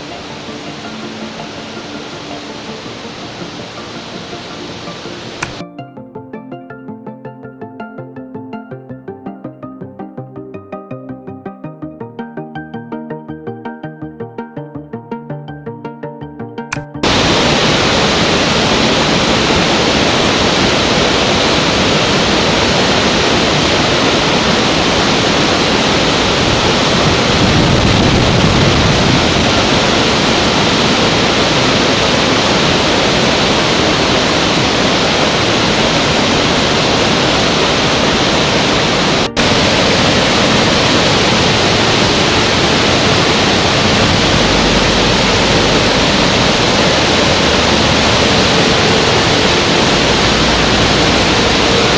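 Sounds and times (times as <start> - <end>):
waterfall rushing: 0.0 - 5.6, 17.0 - 51.9.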